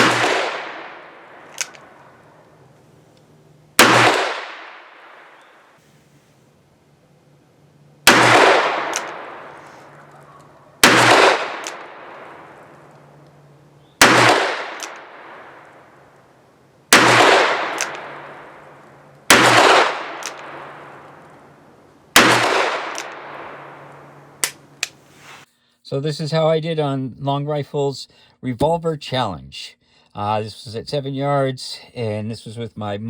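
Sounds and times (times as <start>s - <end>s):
revolver shots with echo: 10.8s - 12.2s.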